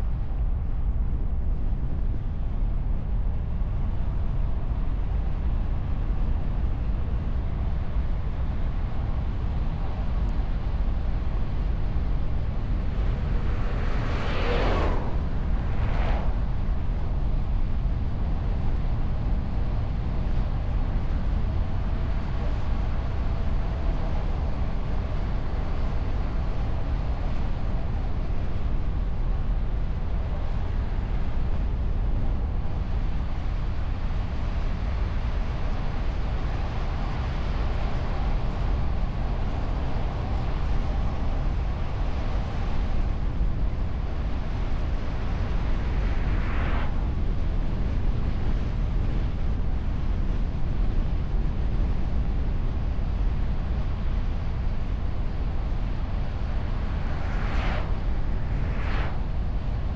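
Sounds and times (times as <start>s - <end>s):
faint hum: 0.0s - 59.9s
wind and road noise: 0.0s - 59.9s
brief rising swish: 13.0s - 17.0s, 56.9s - 59.4s.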